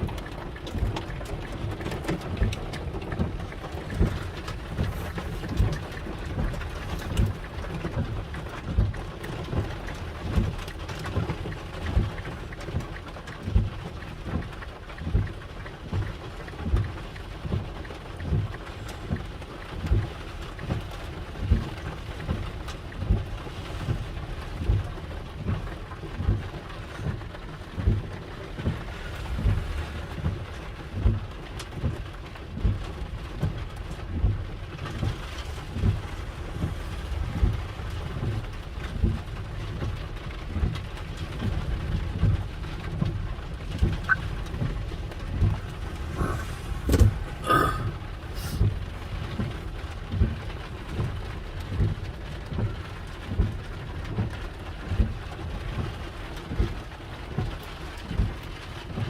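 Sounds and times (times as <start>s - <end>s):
heavy rain hissing: 44.0s - 49.4s.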